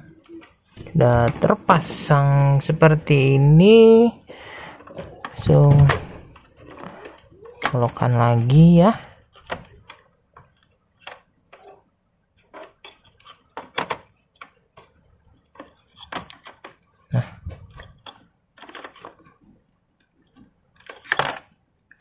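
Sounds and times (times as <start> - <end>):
plastic and metal parts clicking: 4.8 - 11.8, 12.4 - 22.0.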